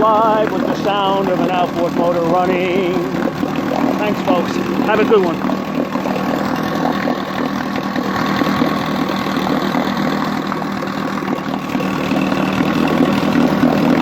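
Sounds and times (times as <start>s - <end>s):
outboard motor running: 0.0s - 14.0s.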